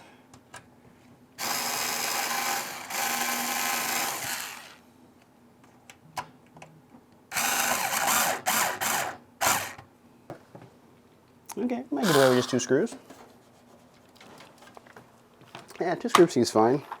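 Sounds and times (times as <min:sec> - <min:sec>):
power drill driving screws: 0:01.4 - 0:04.8, 0:07.3 - 0:09.8, 0:12.0 - 0:12.6.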